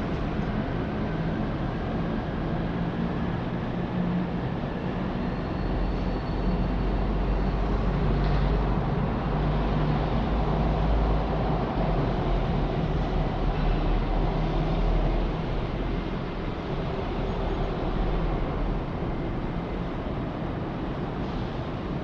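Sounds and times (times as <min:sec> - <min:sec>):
faint high squeal: 0:05.2 - 0:07.6.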